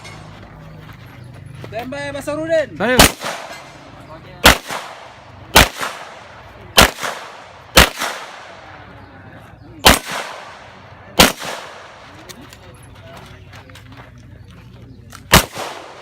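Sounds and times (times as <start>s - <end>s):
pistol shots with echo: 2.9s - 8.9s, 9.8s - 12.2s, 15.3s - 16.0s.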